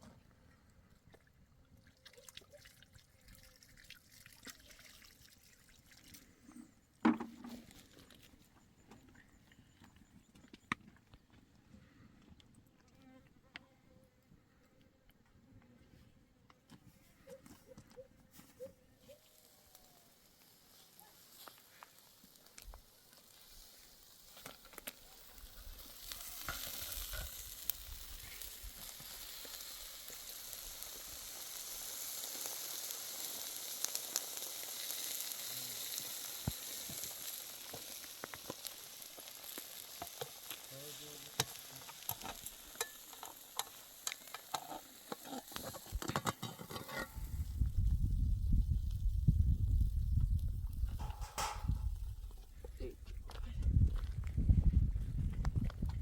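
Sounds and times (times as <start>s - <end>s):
small crackles of frying: 0.0s - 6.7s, 7.3s - 13.7s, 18.3s - 56.0s
food sizzling in hot oil: 19.1s - 52.0s.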